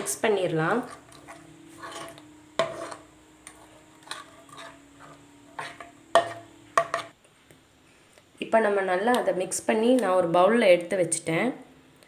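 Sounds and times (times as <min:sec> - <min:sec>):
spoon stirring thick mixture: 0:00.0 - 0:07.2
faint steady hum: 0:00.0 - 0:12.0.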